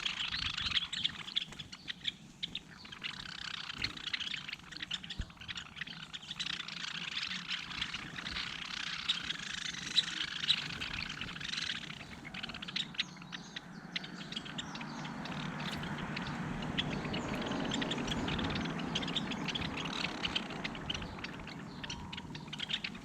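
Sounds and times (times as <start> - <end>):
small birds chirping: 0.0 - 23.0
low rumble: 13.0 - 23.0.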